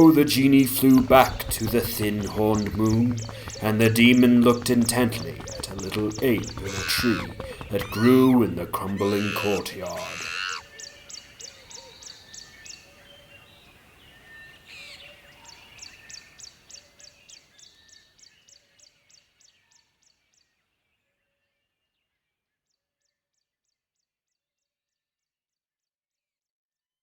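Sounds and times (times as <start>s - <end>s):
faint bird calls: 0.0s - 17.7s.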